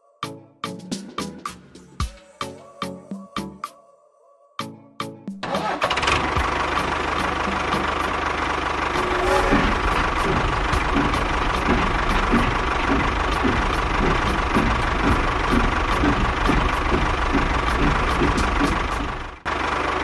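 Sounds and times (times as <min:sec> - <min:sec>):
tractor engine idling with knock: 0:09.0 - 0:19.8.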